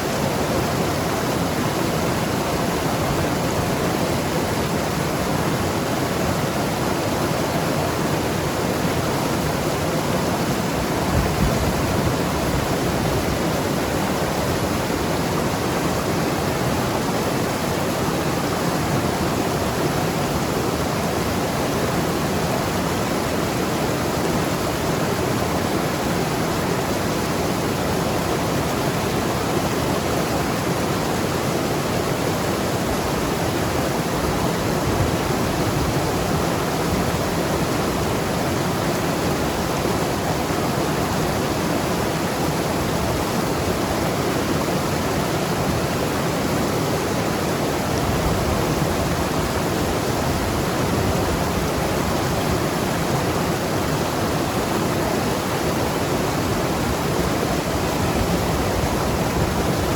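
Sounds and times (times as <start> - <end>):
river rushing over rocks: 0.0 - 59.9.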